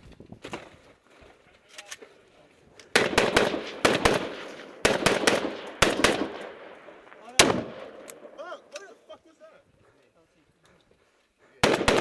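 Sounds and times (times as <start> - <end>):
gunshots echoing: 2.9 - 8.8, 11.6 - 12.0.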